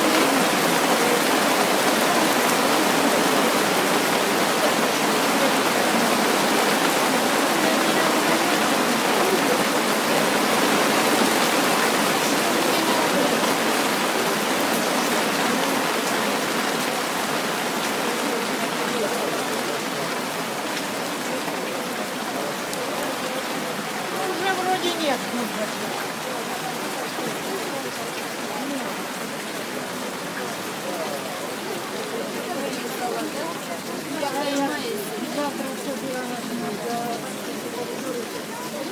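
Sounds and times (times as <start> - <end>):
raindrops pattering: 0.0 - 38.9
steady rain hiss: 0.0 - 38.9.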